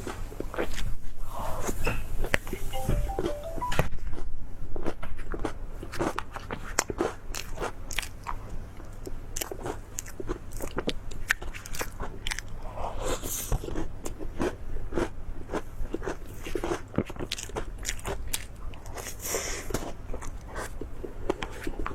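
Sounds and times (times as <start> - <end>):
crunchy food being chewed: 0.0 - 1.7, 4.7 - 21.9.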